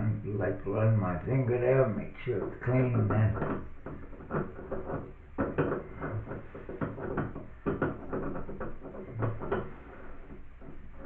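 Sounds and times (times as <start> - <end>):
metal tap parts knocking: 3.0 - 10.8.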